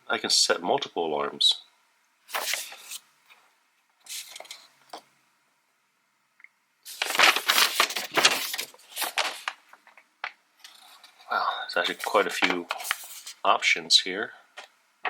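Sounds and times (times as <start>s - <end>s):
paper rustling and crinkling: 2.3s - 3.0s, 4.0s - 4.7s, 6.9s - 13.4s.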